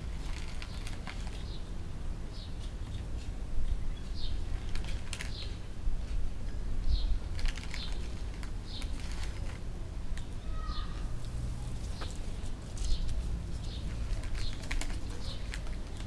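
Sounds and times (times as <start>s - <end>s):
wind rumble on microphone: 0.0s - 9.6s.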